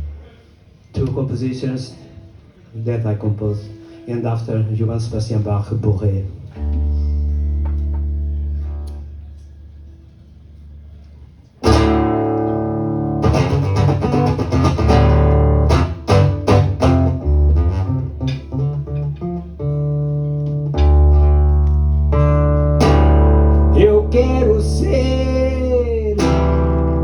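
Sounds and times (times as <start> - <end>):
guitar strumming chords: 11.6 - 27.0.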